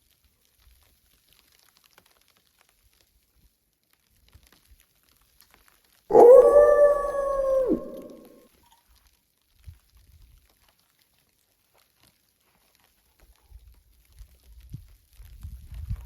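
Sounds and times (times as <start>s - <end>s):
wolf howling: 6.1s - 8.4s.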